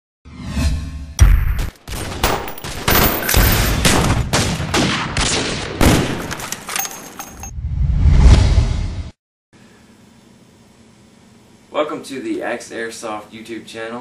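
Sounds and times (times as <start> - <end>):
gunshots: 1.2 - 6.5.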